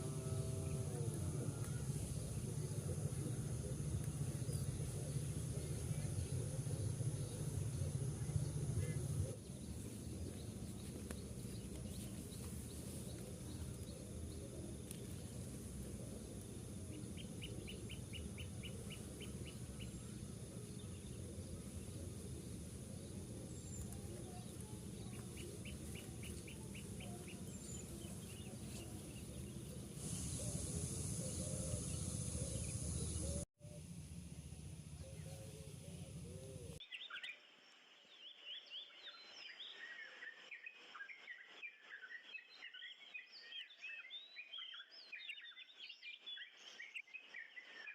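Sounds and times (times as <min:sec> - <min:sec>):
small birds chirping: 0:00.0 - 0:33.5
low background noise: 0:00.0 - 0:36.8.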